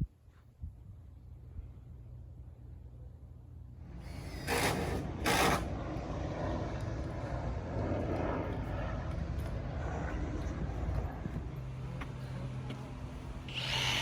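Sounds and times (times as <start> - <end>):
faint work sounds: 0.1 - 6.1, 8.5 - 14.0
loud hissing bursts: 13.5 - 14.0.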